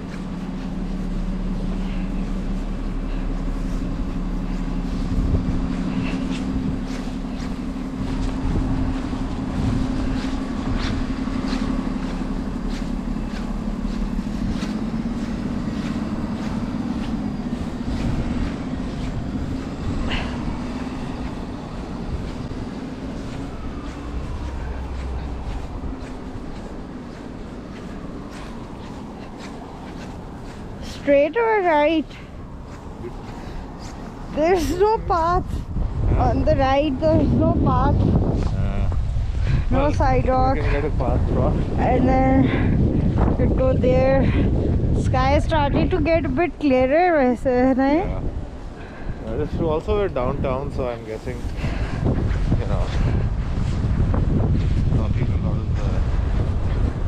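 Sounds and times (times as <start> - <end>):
crunching steps: 0.0 - 36.0
vehicle engine humming: 0.0 - 57.0.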